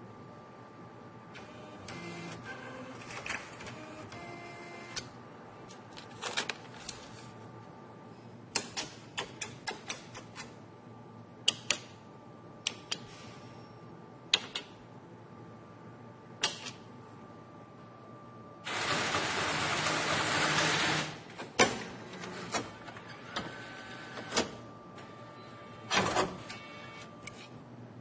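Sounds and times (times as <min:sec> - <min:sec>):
faint steady hum: 0:00.0 - 0:18.7.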